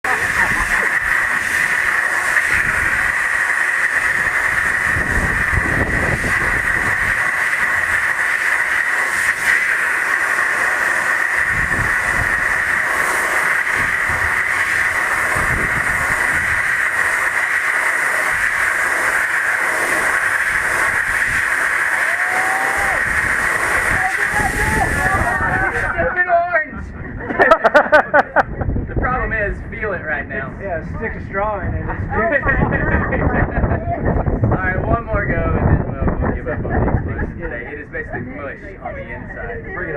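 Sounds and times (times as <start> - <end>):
compressed air hissing: 0.1 - 26.0
low rumble: 28.4 - 39.9.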